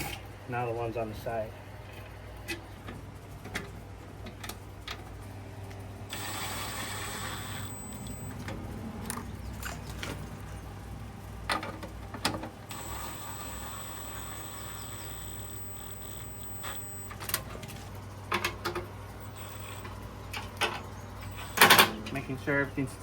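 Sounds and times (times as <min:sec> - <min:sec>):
ratchet wrench ratcheting: 0:06.1 - 0:08.4, 0:12.7 - 0:17.2, 0:19.2 - 0:20.0, 0:21.2 - 0:21.9
sharp metal clicks: 0:12.7 - 0:17.4, 0:18.3 - 0:22.2.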